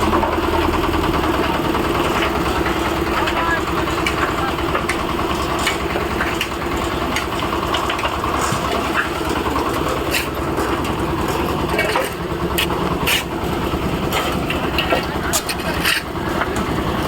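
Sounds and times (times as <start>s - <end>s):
concrete mixer engine running: 0.0s - 17.0s.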